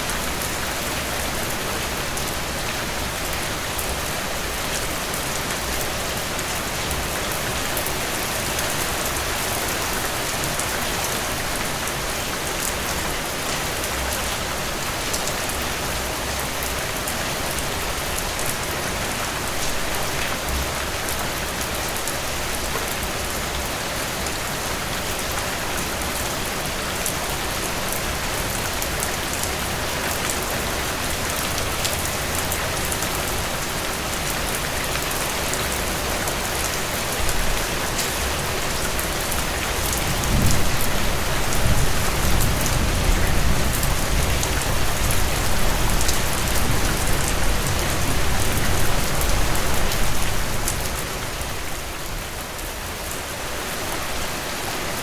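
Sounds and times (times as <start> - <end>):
heavy rain pouring: 0.0 - 55.0
thunder rumbling: 40.0 - 48.8.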